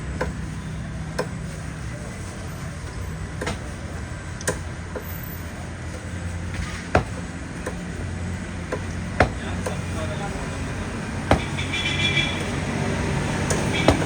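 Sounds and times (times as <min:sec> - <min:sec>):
knife chopping on cutting board: 0:07.0 - 0:07.2, 0:09.2 - 0:09.5, 0:11.3 - 0:11.6.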